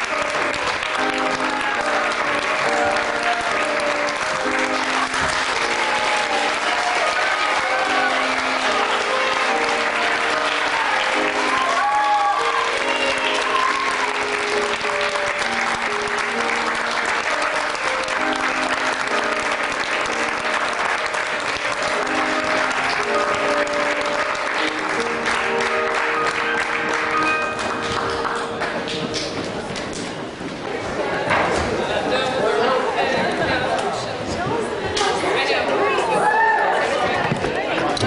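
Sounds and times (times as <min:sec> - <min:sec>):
audience applauding: 0:00.0 - 0:30.0
orchestral music: 0:00.0 - 0:30.0.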